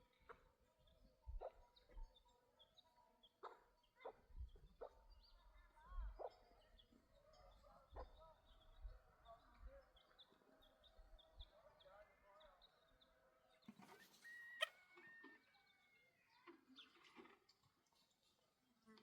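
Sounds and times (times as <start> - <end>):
faint animal chirps: 13.7 - 16.9.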